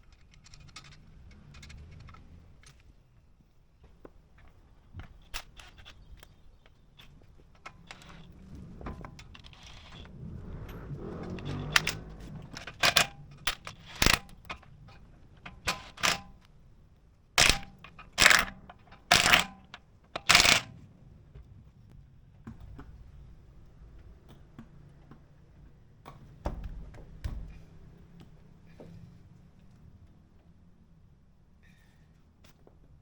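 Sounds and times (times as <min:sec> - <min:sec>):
sharp metallic clicks and knocks: 0:00.0 - 0:03.0, 0:04.0 - 0:16.5, 0:17.4 - 0:20.8
loud clanks: 0:05.4 - 0:16.5, 0:17.4 - 0:20.8.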